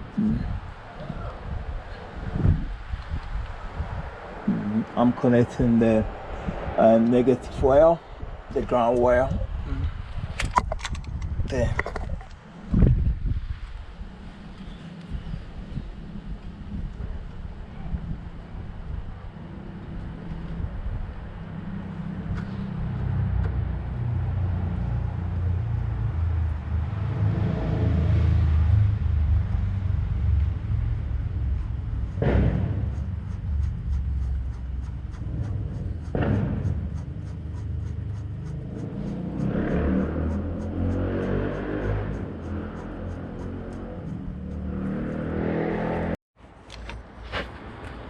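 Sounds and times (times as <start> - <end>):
low uneven rumble: 0.0 - 10.4, 11.1 - 39.6
sharp knocks: 32.1 - 33.7, 35.2 - 37.2.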